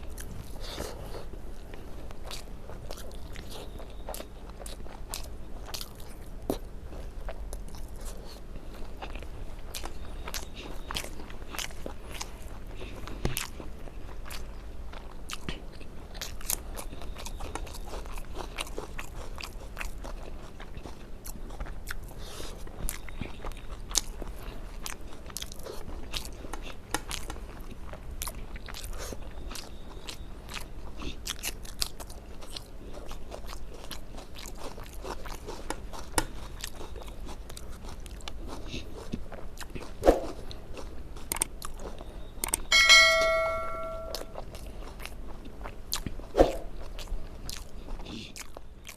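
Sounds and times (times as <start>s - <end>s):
person chewing with mouth clicks: 0.0s - 42.7s, 44.1s - 48.9s.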